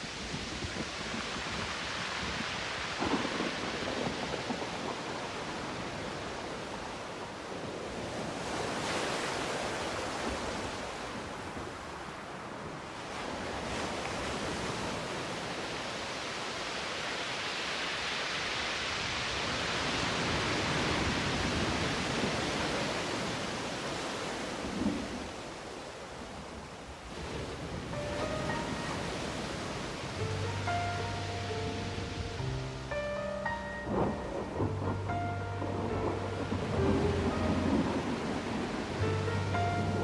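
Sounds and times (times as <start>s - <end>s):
ocean waves washing: 0.0s - 40.0s.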